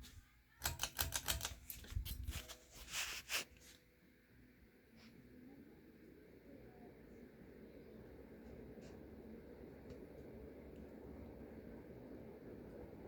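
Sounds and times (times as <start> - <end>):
faint steady hum: 0.0 - 13.0
light clicks and rattles: 0.6 - 2.6.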